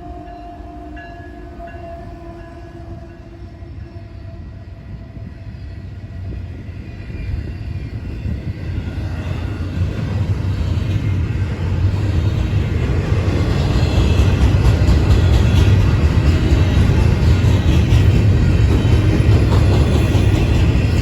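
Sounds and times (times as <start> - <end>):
diesel locomotive rumble: 4.8 - 21.0.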